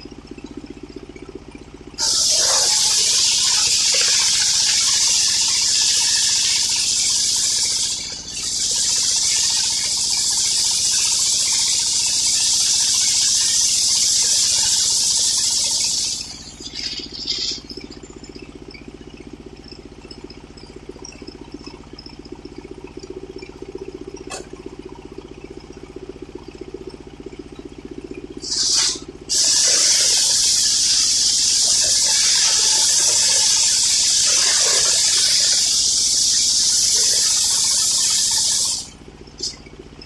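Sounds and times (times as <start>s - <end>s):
engine running steadily: 0.0s - 40.0s
saw blade cutting wood hiss: 2.0s - 17.7s, 28.4s - 39.6s.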